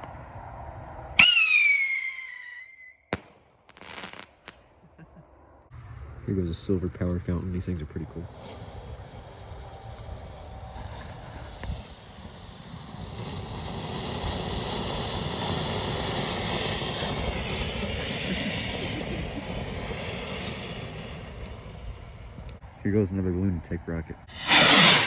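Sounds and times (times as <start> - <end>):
firework fountain hissing: 8.0 - 22.5, 24.3 - 25.0.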